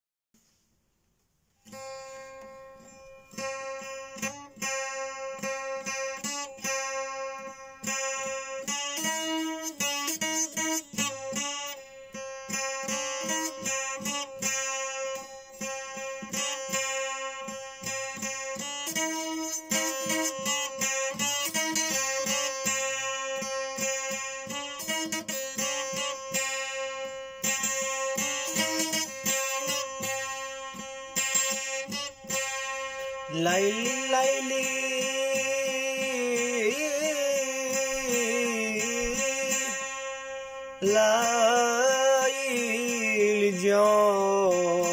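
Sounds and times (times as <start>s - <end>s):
plucked string instrument strummed: 1.5s - 44.9s.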